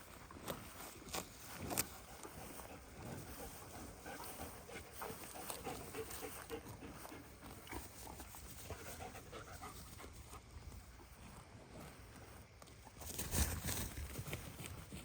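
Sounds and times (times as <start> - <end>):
dog panting: 2.2 - 10.5.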